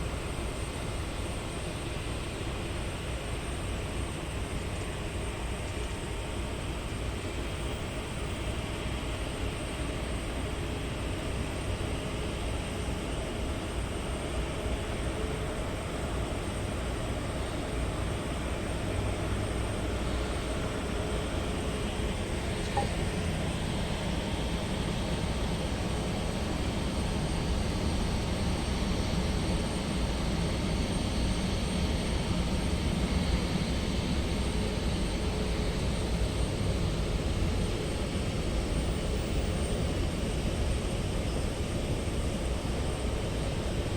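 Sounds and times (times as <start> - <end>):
jet engines rumbling: 14.2 - 43.9.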